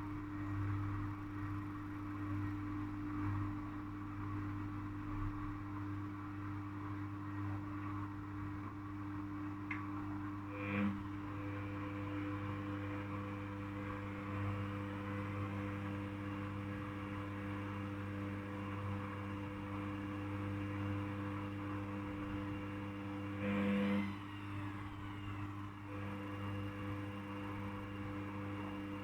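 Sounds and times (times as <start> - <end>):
washing machine motor hum: 6.8 - 29.0.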